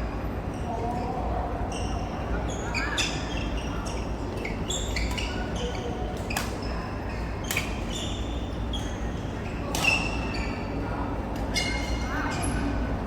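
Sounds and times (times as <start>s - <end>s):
shoes squeaking on court floor: 1.7s - 10.8s.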